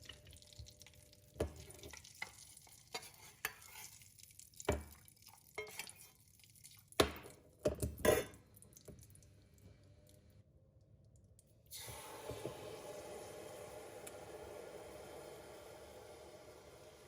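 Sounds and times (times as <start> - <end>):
spoon stirring and clinking: 1.4 - 4.0, 5.5 - 6.2, 7.7 - 8.4.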